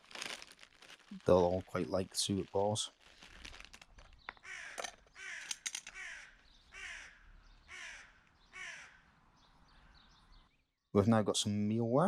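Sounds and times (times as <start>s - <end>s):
crow cawing: 4.4s - 9.1s.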